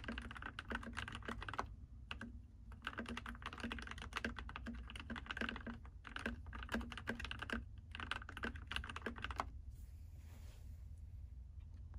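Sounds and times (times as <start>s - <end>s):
mechanical keyboard typing: 0.0s - 9.6s.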